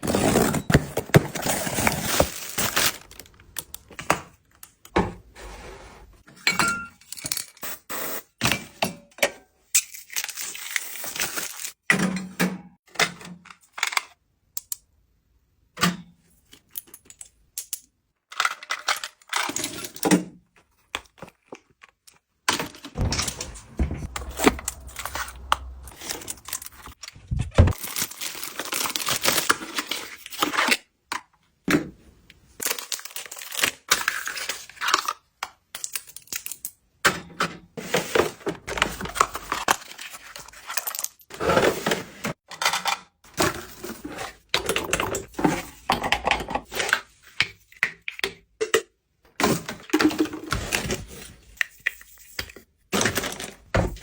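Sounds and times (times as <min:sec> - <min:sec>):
packaging crinkling and tearing: 0:00.2 - 0:03.8, 0:09.8 - 0:11.8, 0:24.1 - 0:30.5, 0:32.6 - 0:35.1.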